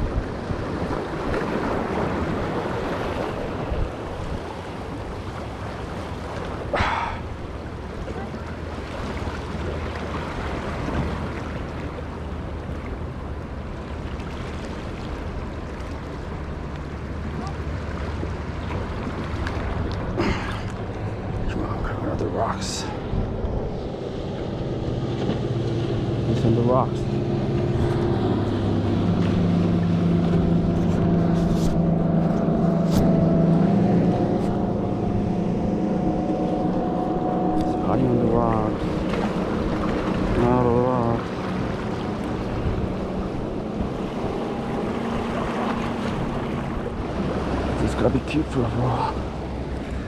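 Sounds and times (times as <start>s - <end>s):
surf washing against rocks: 0.0s - 23.2s, 36.8s - 50.0s
engine drone: 0.0s - 50.0s
wind rumble on microphone: 0.0s - 50.0s.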